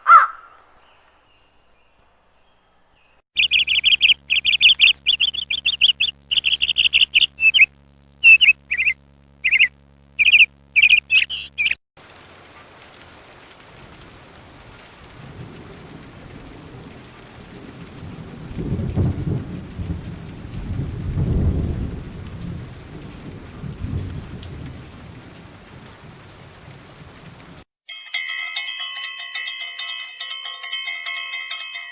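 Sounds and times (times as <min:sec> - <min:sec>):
bird chirping: 0:00.0 - 0:11.8
steady rain: 0:03.4 - 0:10.9, 0:12.0 - 0:27.7
rolling thunder: 0:13.6 - 0:27.6.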